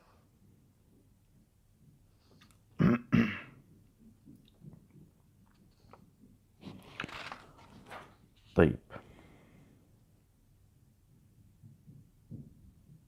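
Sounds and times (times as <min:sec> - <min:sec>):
man clearing throat: 0:02.8 - 0:03.6.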